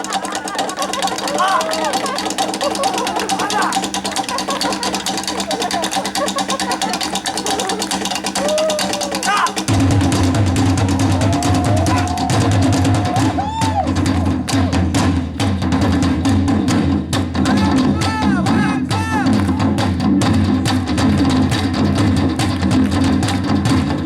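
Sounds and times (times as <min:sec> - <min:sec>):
pitched calls: 0:00.0 - 0:15.2
percussion ensemble drumming: 0:00.0 - 0:24.0.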